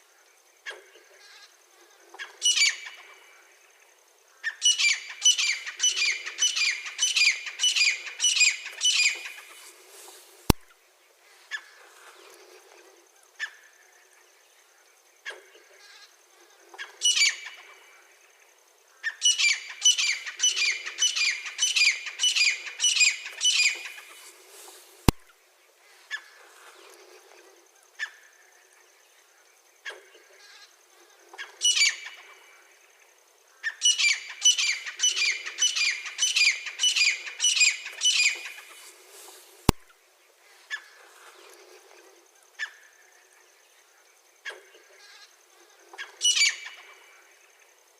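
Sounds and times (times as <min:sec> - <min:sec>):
francolin calling: 0:02.2 - 0:03.2, 0:04.3 - 0:10.6, 0:16.8 - 0:18.0, 0:19.0 - 0:25.3, 0:31.4 - 0:32.5, 0:33.5 - 0:39.8, 0:45.7 - 0:47.5.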